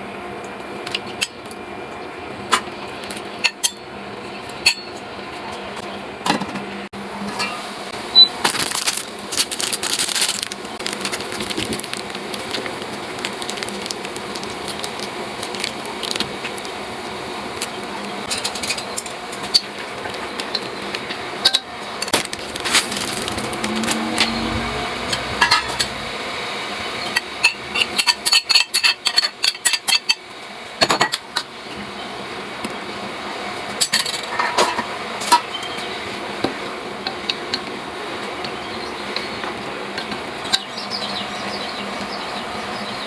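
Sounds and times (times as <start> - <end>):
utensils and dishes clinking: 18.3 - 26.2, 27.0 - 30.2.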